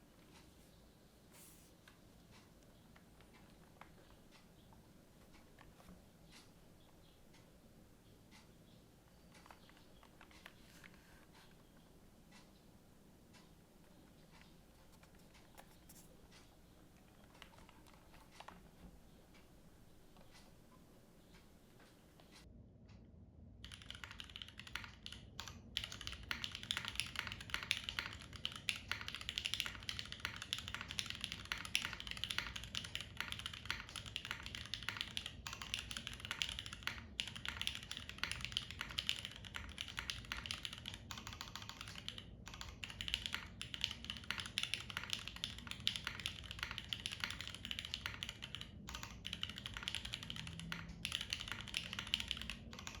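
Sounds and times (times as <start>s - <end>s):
mechanical keyboard typing: 14.3s - 18.8s, 23.6s - 53.0s.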